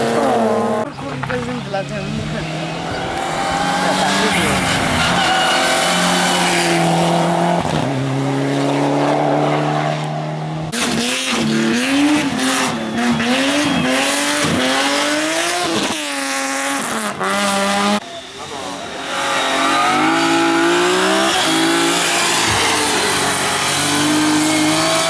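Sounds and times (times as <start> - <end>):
race car engine through gear changes: 0.0 - 18.0
race car engine at full throttle: 0.0 - 25.0.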